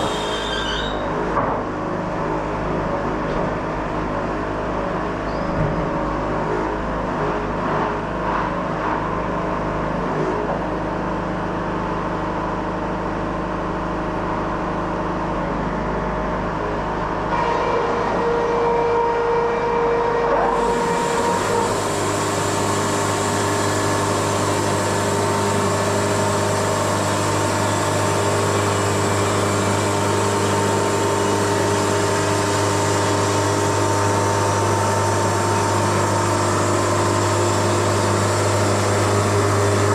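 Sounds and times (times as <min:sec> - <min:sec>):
sawmill running: 0:00.0 - 0:05.1, 0:12.0 - 0:39.9.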